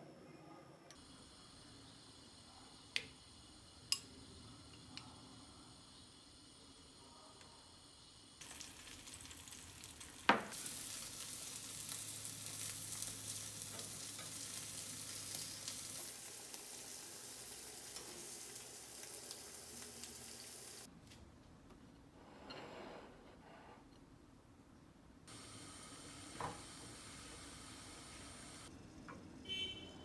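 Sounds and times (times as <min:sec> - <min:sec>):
food sizzling in a pan: 0:01.0 - 0:20.9, 0:25.3 - 0:28.7.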